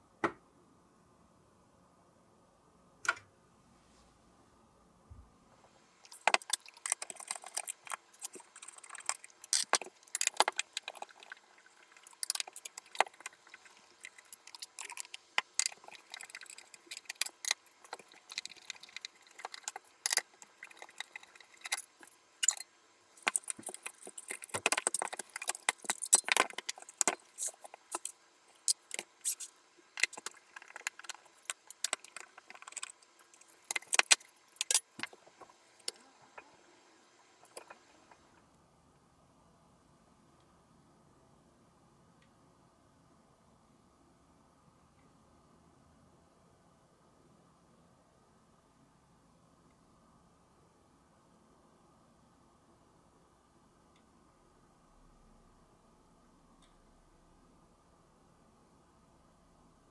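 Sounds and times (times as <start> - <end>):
small metal parts clinking: 6.1 - 22.6, 23.2 - 36.0.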